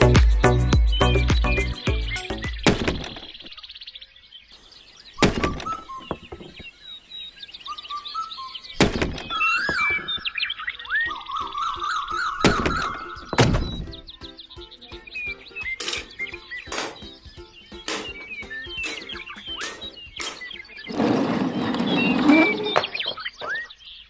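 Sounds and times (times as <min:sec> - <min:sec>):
music: 0:00.0 - 0:02.7, 0:11.1 - 0:20.9
sliding whistle tones: 0:05.4 - 0:06.1, 0:18.8 - 0:23.7.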